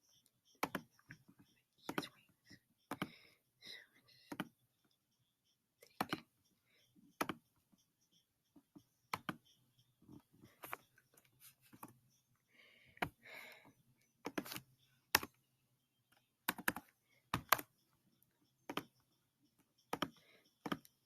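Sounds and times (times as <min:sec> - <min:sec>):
mouse and keyboard clicks: 0:00.1 - 0:02.2, 0:02.8 - 0:03.2, 0:04.3 - 0:04.6, 0:05.8 - 0:06.3, 0:07.1 - 0:07.5, 0:08.6 - 0:12.0, 0:14.2 - 0:15.4, 0:16.1 - 0:17.8, 0:18.6 - 0:19.0, 0:19.8 - 0:21.0.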